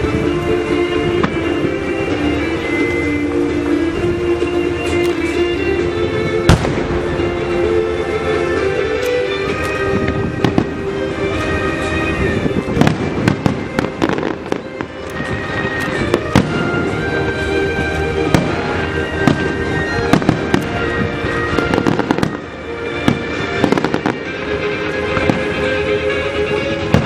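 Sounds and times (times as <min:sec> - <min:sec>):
fireworks bangs and crackles: 0:00.0 - 0:27.0
music playing: 0:00.0 - 0:27.0.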